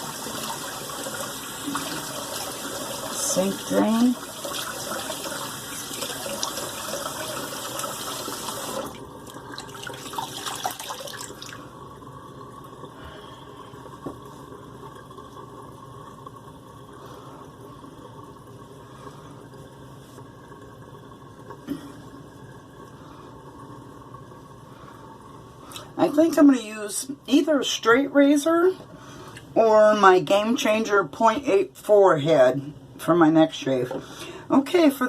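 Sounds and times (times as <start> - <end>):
sink tap running: 0.0 - 24.4
water draining from sink: 0.0 - 28.2.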